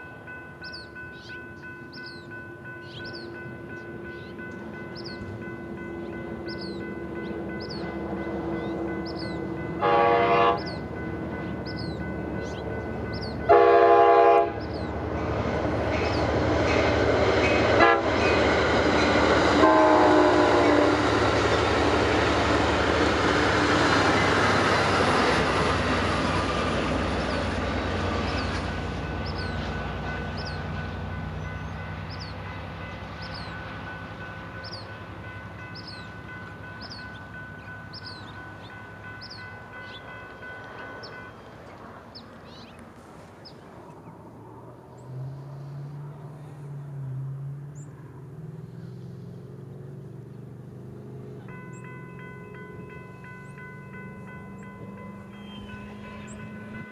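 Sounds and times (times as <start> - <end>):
crossing bell ringing: 0.0 - 42.8, 50.7 - 56.9
train passing: 0.0 - 56.9
train horn blasts: 7.6 - 11.2, 13.2 - 14.9, 16.8 - 22.2, 54.6 - 56.9.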